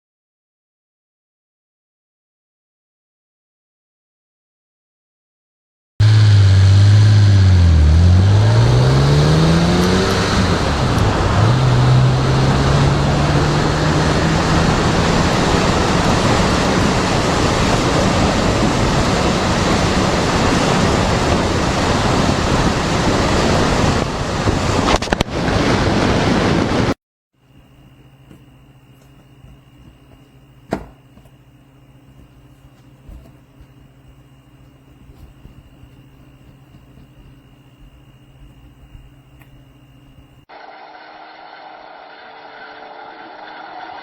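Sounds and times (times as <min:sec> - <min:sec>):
vehicle engine: 0:06.0 - 0:23.6, 0:40.5 - 0:44.0.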